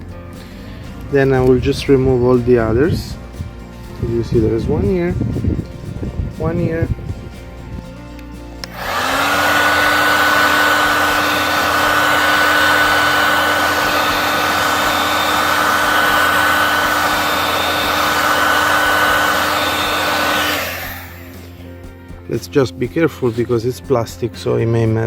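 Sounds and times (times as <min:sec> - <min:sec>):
heat gun blowing with whine: 0:08.6 - 0:21.8.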